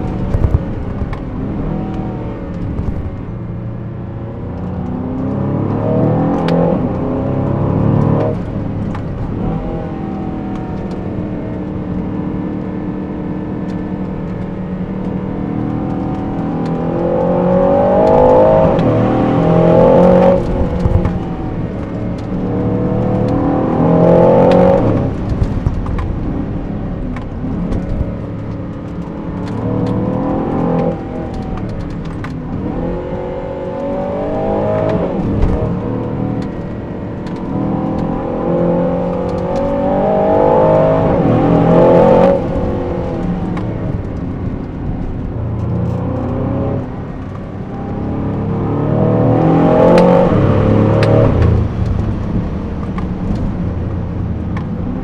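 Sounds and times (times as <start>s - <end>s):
car engine accelerating through gears: 0.0s - 55.0s.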